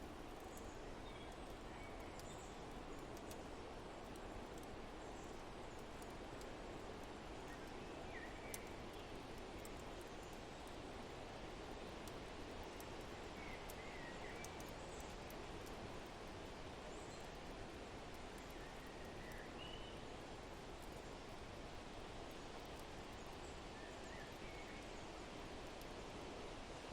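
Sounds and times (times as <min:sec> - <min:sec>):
fireplace crackles: 0:00.0 - 0:13.8
wind: 0:00.0 - 0:26.9.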